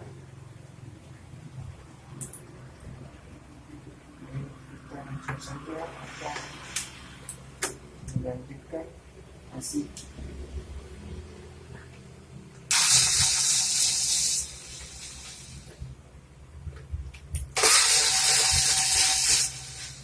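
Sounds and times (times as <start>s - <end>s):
hissing air bursts: 12.7s - 15.8s, 17.5s - 20.0s.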